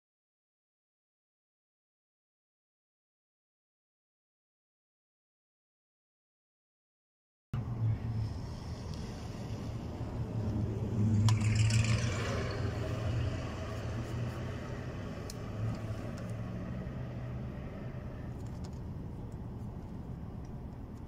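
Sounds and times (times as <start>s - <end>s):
car engine humming: 7.6s - 21.0s.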